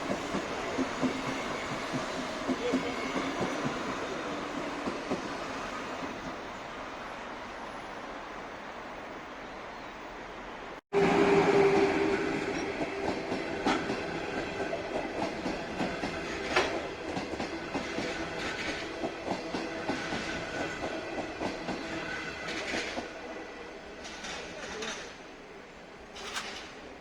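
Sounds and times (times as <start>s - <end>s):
train wheels clattering over rails: 0.0s - 5.4s, 11.5s - 23.2s, 24.0s - 25.3s, 26.1s - 27.0s.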